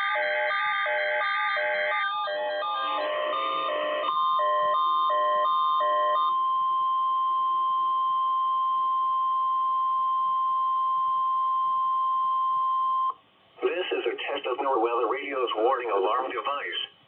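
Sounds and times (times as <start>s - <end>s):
steady warning alarm tone: 0.0s - 13.2s
buzzy noise: 2.6s - 4.1s.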